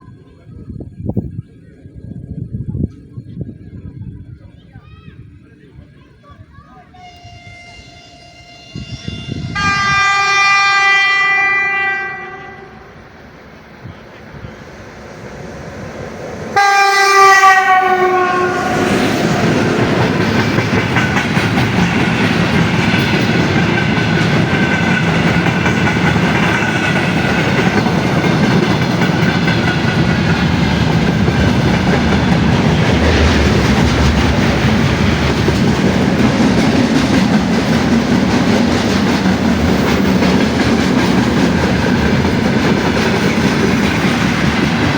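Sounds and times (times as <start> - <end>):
train horn: 6.9 - 13.0, 16.6 - 19.9
train wheels clattering over rail joints: 19.0 - 44.9.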